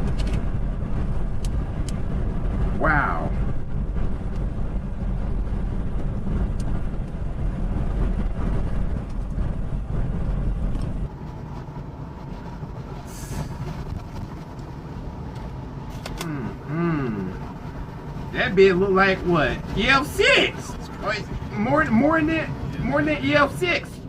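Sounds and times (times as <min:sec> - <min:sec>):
storm wind buffeting microphone: 0:00.0 - 0:15.9, 0:16.6 - 0:24.0
person speaking: 0:18.3 - 0:24.0.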